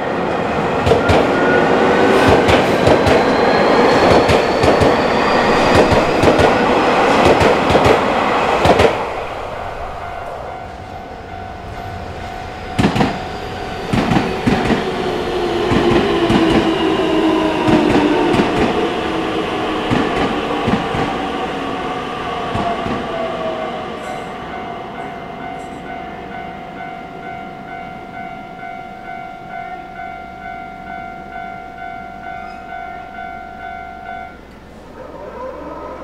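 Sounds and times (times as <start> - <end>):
train whine falling in pitch: 0.7 - 27.8
level crossing warning bell: 9.8 - 14.5, 23.4 - 34.9
train wheels clicking over rail joints: 12.7 - 15.0.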